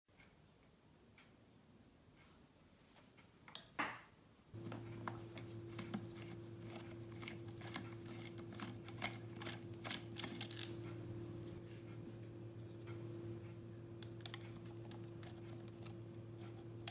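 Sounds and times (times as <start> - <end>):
steady low hum: 4.6 - 16.9.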